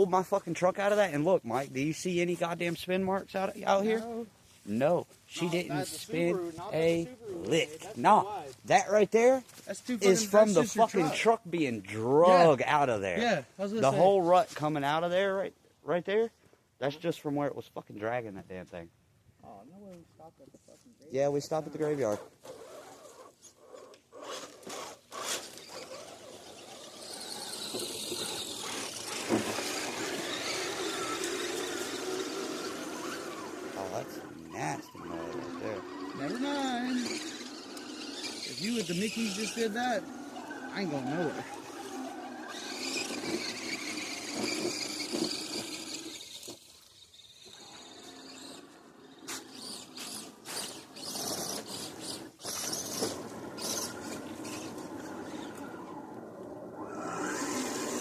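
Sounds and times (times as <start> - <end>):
toy crawler motor whining: 5.3 - 11.3, 21.4 - 58.0.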